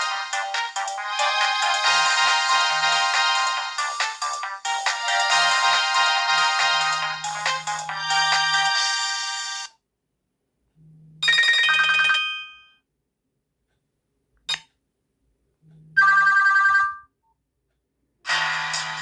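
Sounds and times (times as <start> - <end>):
phone ringtone tunes: 0.0 - 9.7, 16.0 - 17.0.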